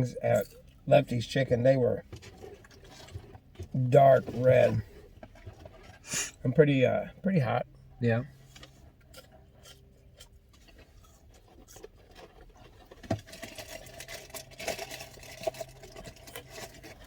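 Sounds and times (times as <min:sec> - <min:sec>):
wrappers rustling: 0:10.8 - 0:17.0.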